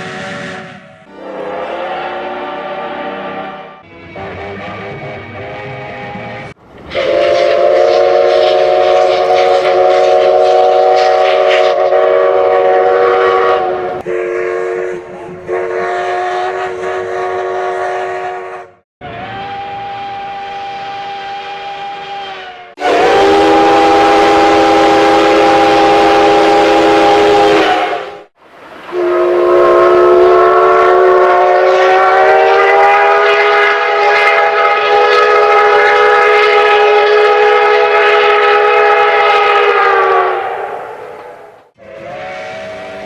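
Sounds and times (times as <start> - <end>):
steam locomotive whistle blasts: 0.0 - 6.2, 6.9 - 28.3, 28.9 - 43.0
steam hissing: 6.8 - 13.9, 40.4 - 43.0.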